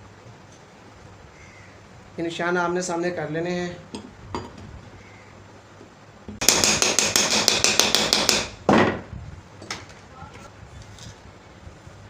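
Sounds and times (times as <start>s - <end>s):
sharp metallic taps: 6.3s - 8.6s.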